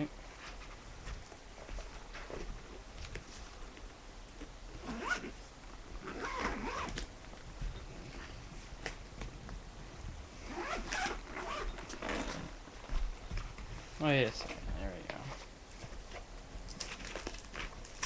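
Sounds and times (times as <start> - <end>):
zipper pulled open: 4.8 - 5.4, 6.0 - 7.1, 10.4 - 12.6.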